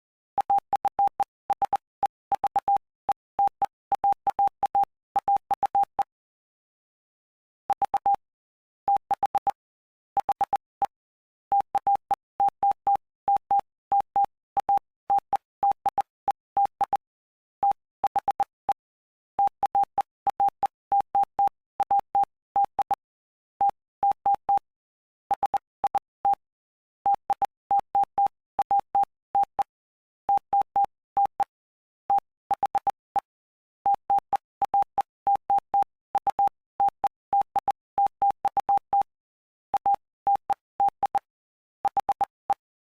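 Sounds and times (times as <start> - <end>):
morse code beeps: 0.4 - 6.1, 7.7 - 8.2, 10.2 - 17.0, 19.4 - 24.6, 27.1 - 29.7, 30.3 - 31.5, 32.1 - 33.3, 33.9 - 39.1, 39.7 - 42.6.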